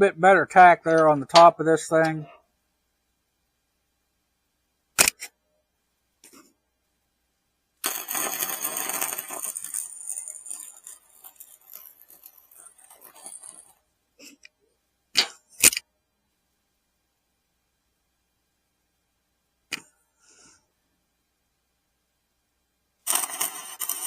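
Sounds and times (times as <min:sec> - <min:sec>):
sharp metallic clicks: 0:05.0 - 0:05.3
welding arc crackling: 0:07.8 - 0:13.8, 0:23.0 - 0:24.0.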